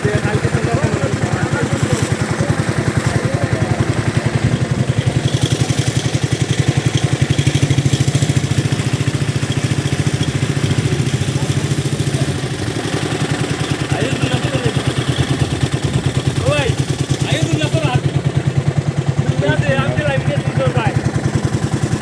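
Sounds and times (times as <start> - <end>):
small engine chugging: 0.0 - 22.0.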